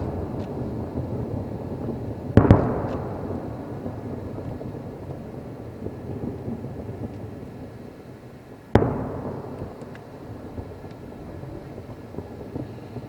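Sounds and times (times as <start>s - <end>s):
loud firework boom: 0.0s - 4.7s, 8.8s - 10.1s
fireworks bursting: 0.0s - 8.0s, 8.7s - 13.0s
faint firework crackles: 0.0s - 13.0s.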